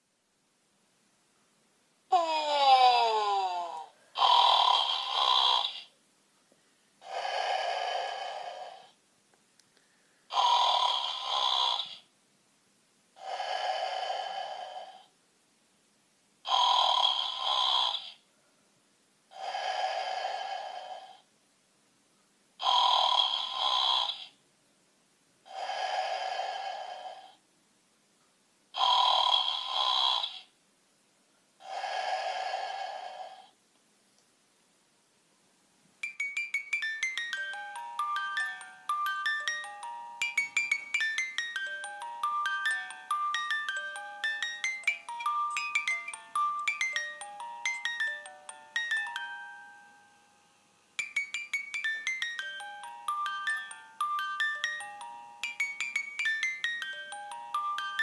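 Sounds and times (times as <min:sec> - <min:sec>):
bear snoring: 0:03.7 - 0:05.9, 0:07.0 - 0:09.0, 0:10.3 - 0:12.0, 0:13.2 - 0:15.1, 0:16.4 - 0:18.2, 0:19.3 - 0:21.3, 0:22.6 - 0:24.3, 0:25.5 - 0:27.4, 0:28.8 - 0:30.5, 0:31.6 - 0:33.6.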